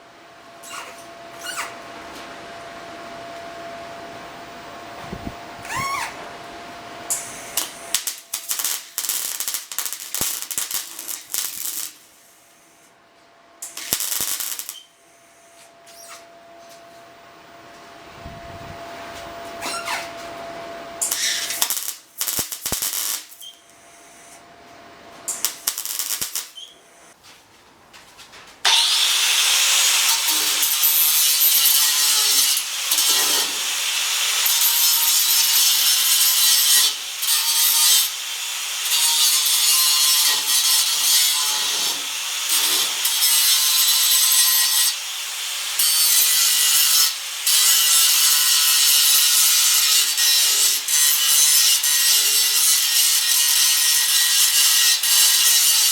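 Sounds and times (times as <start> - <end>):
grinder grinding metal: 7.1 - 12.7, 13.6 - 14.9, 21.0 - 23.6, 25.3 - 26.7, 28.7 - 45.2.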